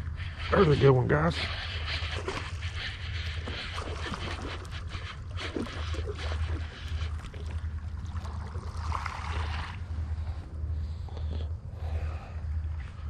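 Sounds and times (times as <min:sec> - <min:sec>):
fish splashing in water: 0:01.6 - 0:10.1.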